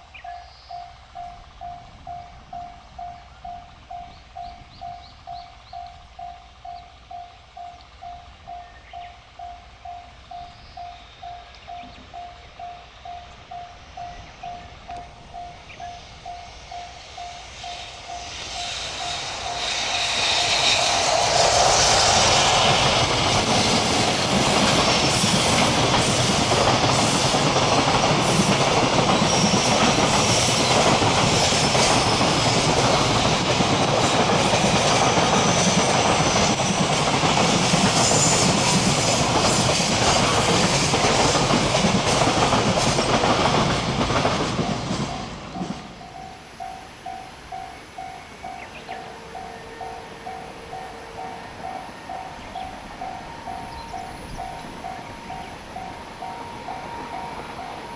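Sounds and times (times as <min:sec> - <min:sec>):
freight train wheels clickety-clack: 0:00.0 - 0:57.9
level-crossing bell ringing: 0:46.0 - 0:57.9.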